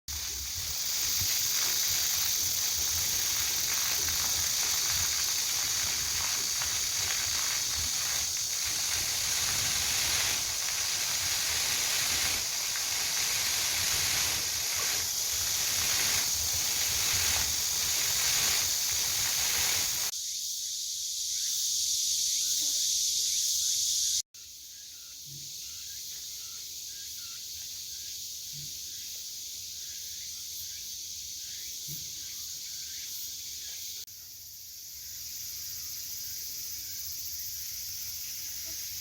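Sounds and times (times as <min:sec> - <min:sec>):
cicadas droning: 0:00.1 - 0:39.0.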